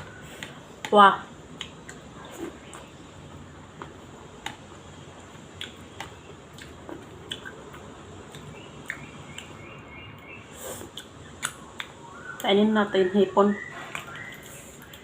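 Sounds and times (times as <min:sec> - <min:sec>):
wet chewing and mouth clicks: 0:01.5 - 0:02.9, 0:05.5 - 0:09.6, 0:10.8 - 0:12.5, 0:13.9 - 0:15.0.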